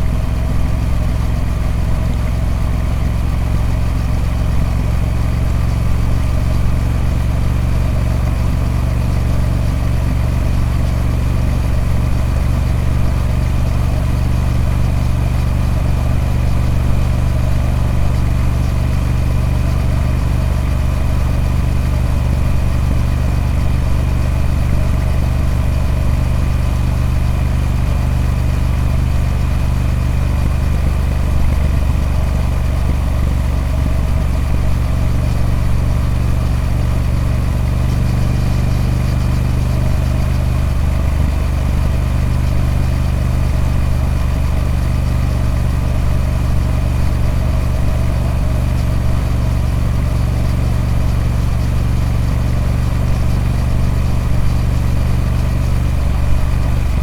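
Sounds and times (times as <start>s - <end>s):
motorcycle engine running steadily: 0.0s - 57.0s.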